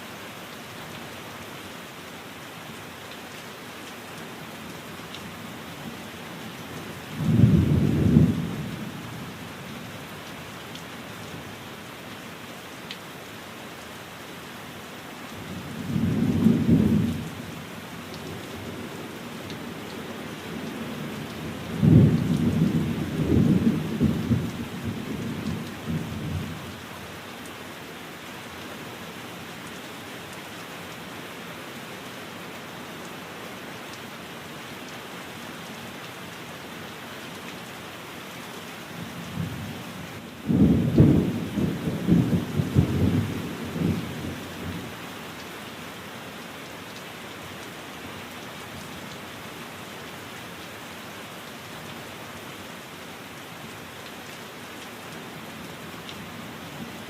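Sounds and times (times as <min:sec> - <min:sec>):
heavy rain: 0:00.0 - 0:57.0
rolling thunder: 0:40.4 - 0:44.0.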